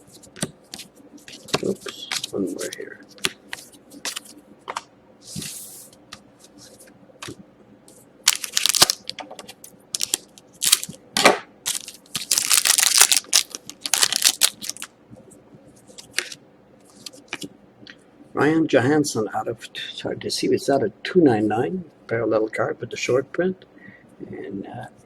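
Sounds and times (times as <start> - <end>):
wrapper crinkling and tearing: 8.3 - 9.2, 10.0 - 11.0, 11.7 - 14.9.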